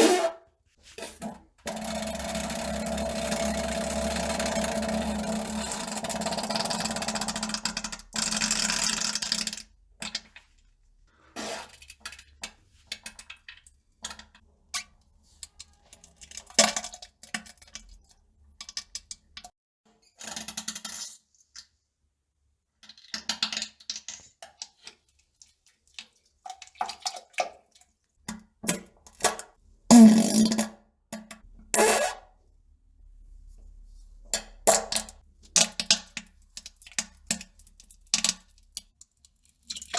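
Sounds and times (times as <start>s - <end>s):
farts: 29.9s - 30.7s.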